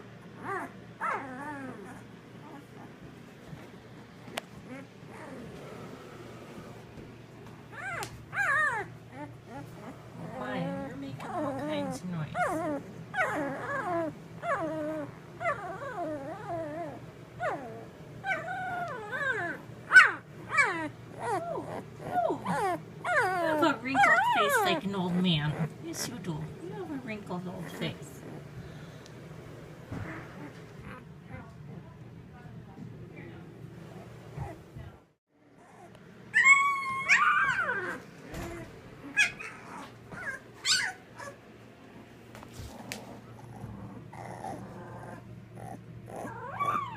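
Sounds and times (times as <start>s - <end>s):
puppies whining: 0.0s - 31.8s, 33.8s - 46.9s
puppy squeaks: 18.3s - 24.8s, 35.8s - 38.0s, 39.0s - 41.4s, 46.2s - 46.9s.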